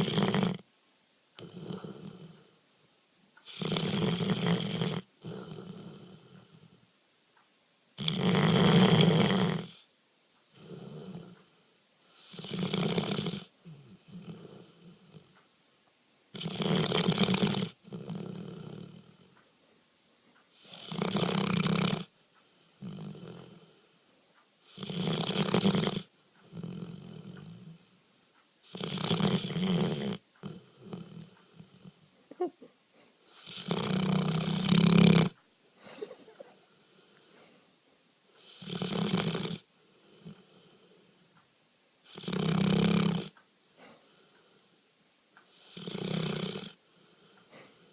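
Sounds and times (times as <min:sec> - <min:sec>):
dog snoring loudly: 0:00.0 - 0:00.7, 0:01.4 - 0:02.8, 0:03.4 - 0:06.9, 0:08.0 - 0:09.9, 0:10.5 - 0:15.4, 0:16.3 - 0:19.4, 0:20.5 - 0:32.2, 0:33.3 - 0:35.4, 0:38.4 - 0:41.4, 0:42.0 - 0:44.7, 0:45.5 - 0:47.9
dog breathing softly: 0:01.4 - 0:07.0, 0:10.5 - 0:15.9, 0:17.7 - 0:32.3, 0:35.8 - 0:41.7, 0:43.2 - 0:47.9.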